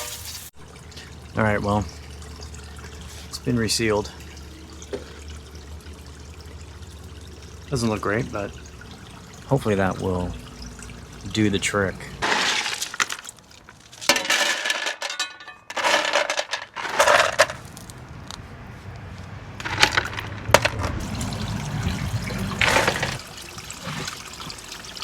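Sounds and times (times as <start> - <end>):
water pouring and splashing: 0.0 - 14.7, 19.6 - 25.0.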